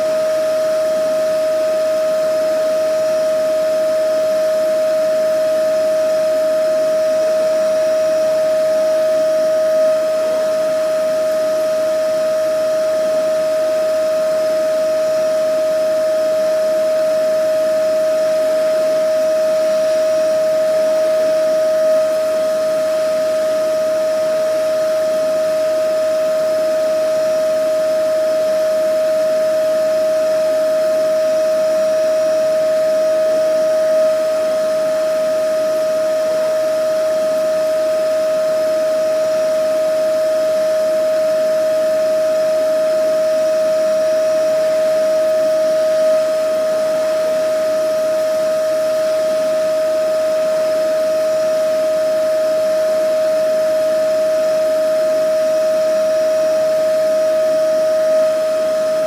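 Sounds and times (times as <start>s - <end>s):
vacuum cleaner running: 0.0s - 59.0s.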